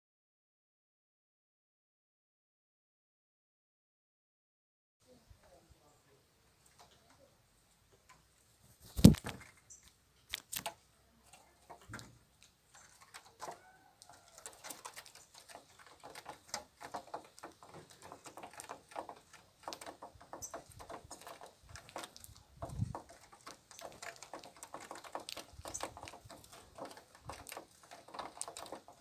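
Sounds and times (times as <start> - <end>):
birds pecking at feed: 5.1 - 29.0
faint bird chirps: 9.0 - 10.0.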